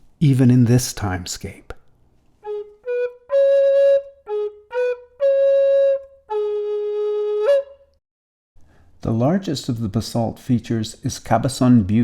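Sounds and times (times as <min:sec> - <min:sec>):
solo flute melody: 0:02.4 - 0:08.0.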